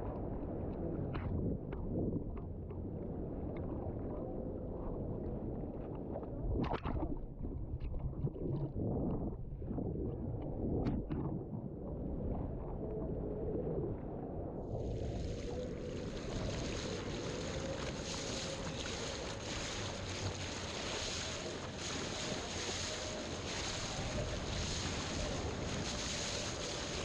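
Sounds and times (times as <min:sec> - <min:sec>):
wind buffeting microphone: 0:14.6 - 0:27.0
rushing water: 0:14.7 - 0:27.0.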